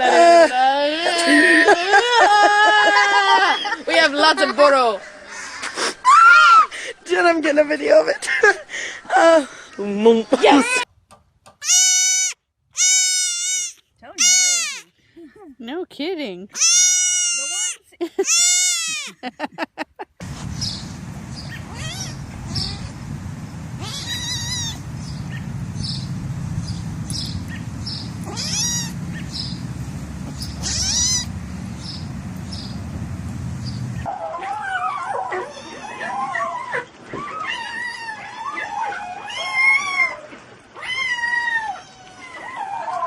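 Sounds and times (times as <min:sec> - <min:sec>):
high squealing calls: 0:20.2 - 0:34.1
steady low hum: 0:20.2 - 0:34.1
cat yowling: 0:21.5 - 0:23.0, 0:23.8 - 0:25.5, 0:28.2 - 0:29.4, 0:30.6 - 0:31.3.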